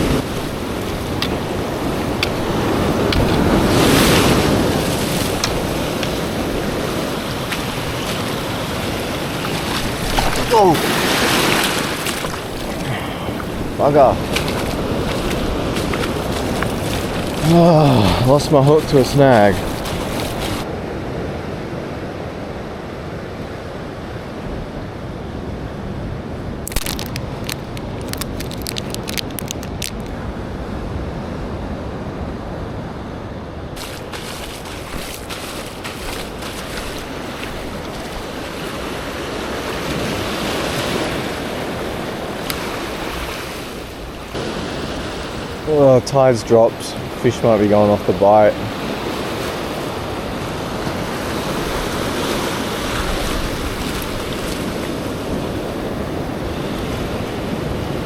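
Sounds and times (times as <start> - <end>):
waves breaking over rocks: 0.0 - 20.9, 26.3 - 30.2, 33.8 - 58.0
wind on microphone: 0.0 - 45.8
heavy surf: 0.0 - 58.0.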